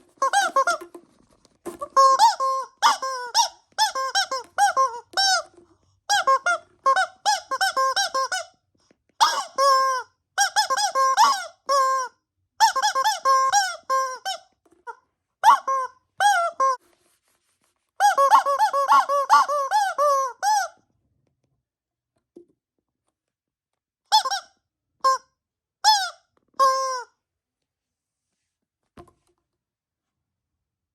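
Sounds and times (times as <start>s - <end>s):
squeaky toy squeaking: 0.0s - 8.6s, 9.2s - 16.8s, 18.0s - 20.8s, 24.1s - 27.2s.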